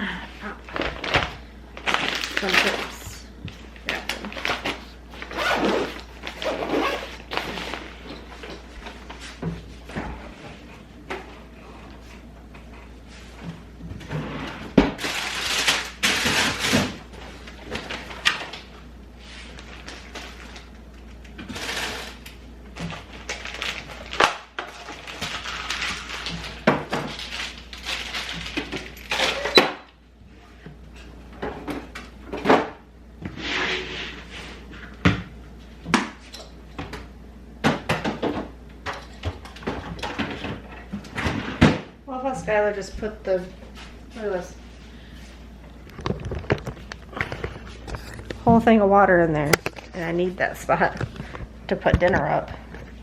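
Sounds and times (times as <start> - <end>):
rustling of wrappers: 0.7 - 8.0, 15.0 - 29.6
clatter of containers and utensils: 45.8 - 48.6.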